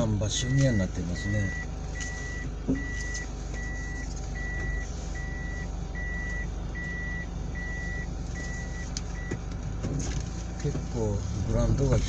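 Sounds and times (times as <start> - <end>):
low engine hum: 0.0 - 12.0
reversing warning beeps: 0.4 - 9.3.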